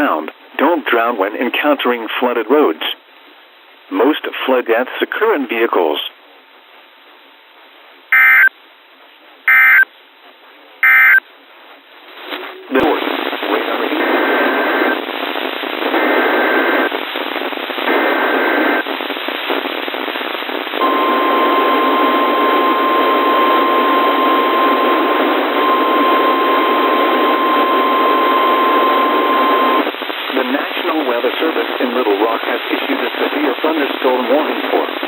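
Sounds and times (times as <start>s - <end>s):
single-pitch warning alarm tone: 8.1s - 8.5s, 9.5s - 9.9s, 10.8s - 11.2s, 20.8s - 29.9s
radio static: 12.2s - 35.0s.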